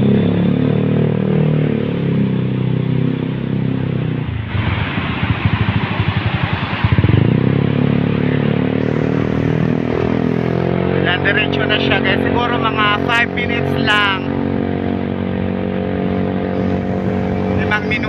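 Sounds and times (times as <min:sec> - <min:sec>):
motorcycle engine running: 0:00.0 - 0:18.0
rushing road noise: 0:00.0 - 0:18.0.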